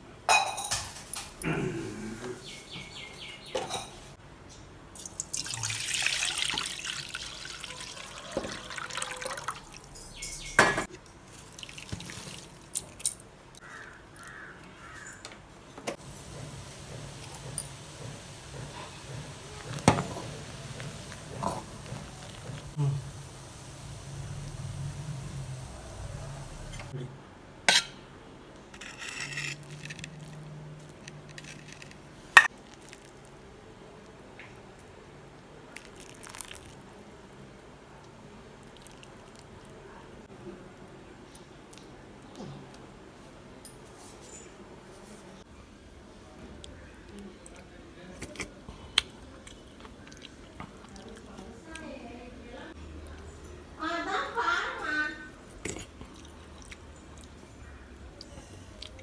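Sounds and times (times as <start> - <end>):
kitchen utensils clinking: 0.3 - 1.8, 2.4 - 4.2, 5.6 - 13.2, 15.9 - 26.9, 27.7 - 28.1
water flowing: 5.0 - 12.8, 16.0 - 27.0
utensil scraping: 16.0 - 26.9.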